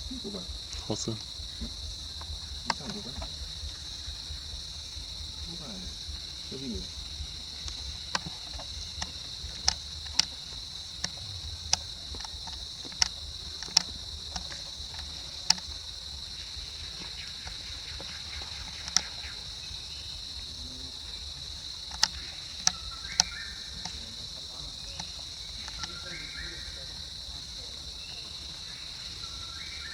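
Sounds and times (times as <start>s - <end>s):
insects chirring: 0.0s - 29.9s
sharp irregular clicks: 0.7s - 16.2s, 17.0s - 19.4s, 21.4s - 27.2s.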